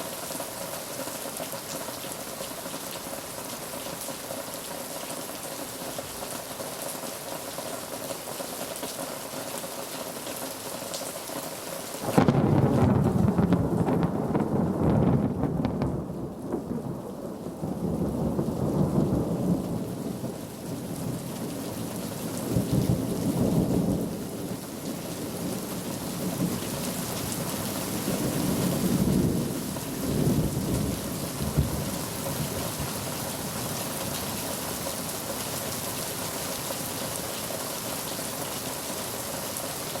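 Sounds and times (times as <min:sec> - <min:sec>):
steady rainfall: 0:00.0 - 0:40.0
thunder rumbling: 0:12.0 - 0:21.3, 0:28.2 - 0:33.7.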